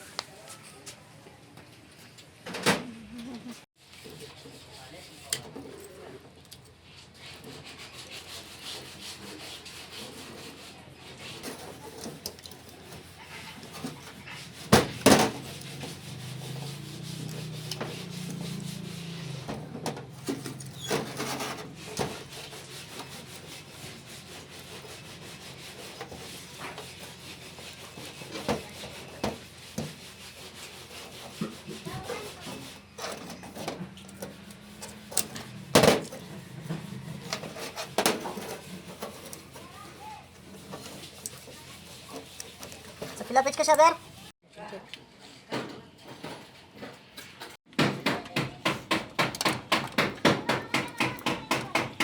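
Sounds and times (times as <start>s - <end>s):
rubbing and scraping: 6.9s - 44.4s.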